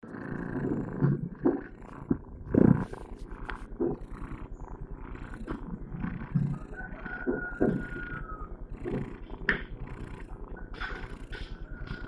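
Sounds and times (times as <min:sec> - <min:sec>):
cat snoring: 0:00.0 - 0:12.0.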